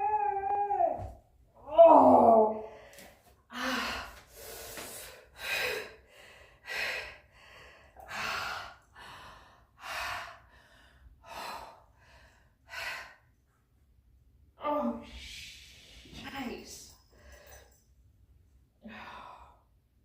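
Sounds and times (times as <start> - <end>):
person breathing heavily: 2.6 - 13.2.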